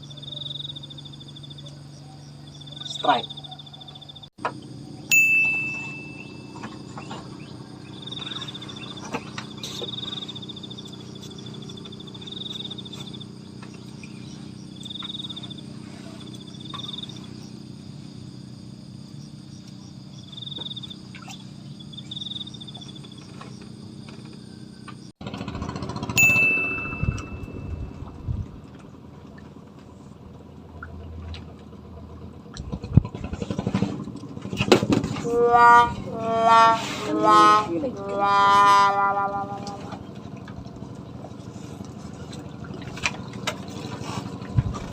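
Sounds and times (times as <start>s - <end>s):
insect chirps: 0.0s - 25.2s, 26.3s - 28.1s
steady low drone: 26.2s - 44.9s.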